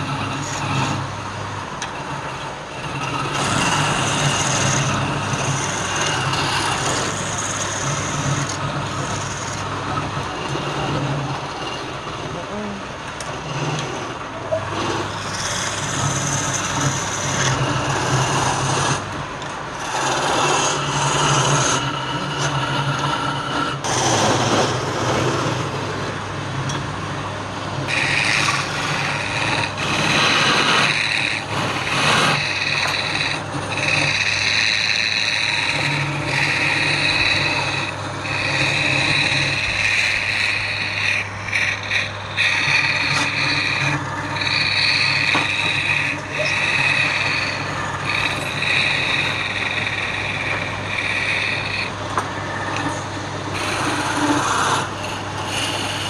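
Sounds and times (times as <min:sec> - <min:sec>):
turning tool scraping wood: 0:00.0 - 0:25.8, 0:27.7 - 0:56.0
wood lathe humming: 0:00.0 - 0:56.0.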